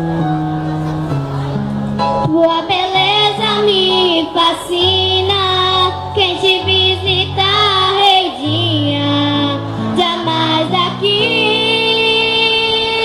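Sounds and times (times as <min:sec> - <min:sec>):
choir singing with instruments: 0:06.1 - 0:13.0.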